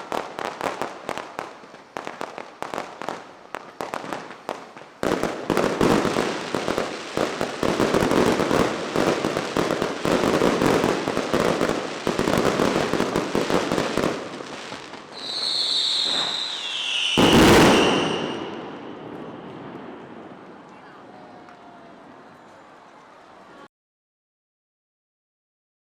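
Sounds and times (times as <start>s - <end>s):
fireworks crackling bangs: 0.0s - 23.2s
firework whistle: 15.1s - 20.5s.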